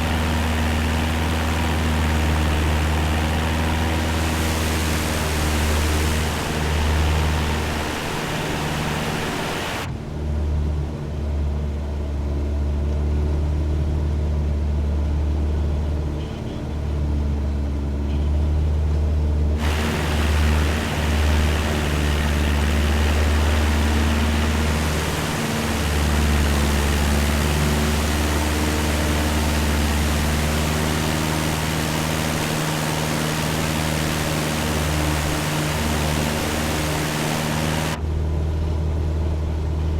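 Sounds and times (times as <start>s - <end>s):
hiss: 0.0s - 9.9s, 19.6s - 38.0s
propeller plane engine droning: 0.0s - 39.9s.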